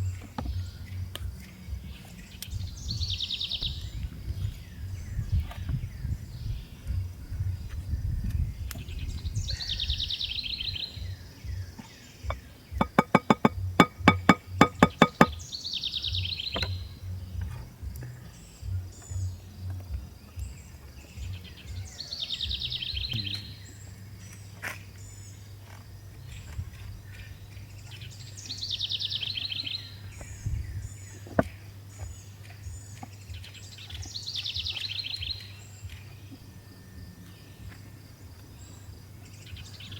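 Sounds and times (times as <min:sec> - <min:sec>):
bird singing: 0:00.0 - 0:39.9
ringing pitched strikes: 0:12.3 - 0:15.4.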